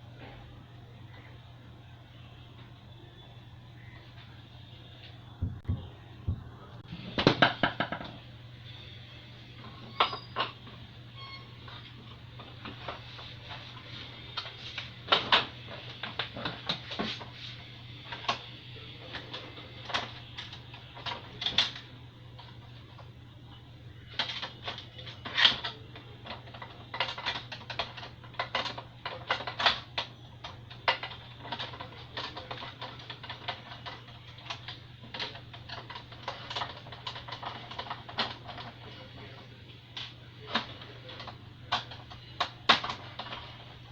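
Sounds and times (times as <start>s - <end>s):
steady low hum: 0.0s - 43.9s
clicks and knocks of hard parts: 7.1s - 8.2s, 24.1s - 39.0s, 40.0s - 43.8s.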